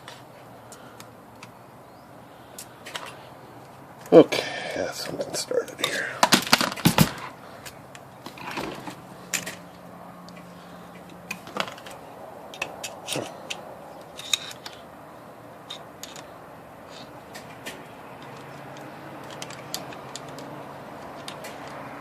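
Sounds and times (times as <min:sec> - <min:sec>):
faint steady hum: 0:00.0 - 0:22.0
hand tools scraping: 0:12.6 - 0:14.8
light clicks of small metal parts: 0:17.0 - 0:21.8.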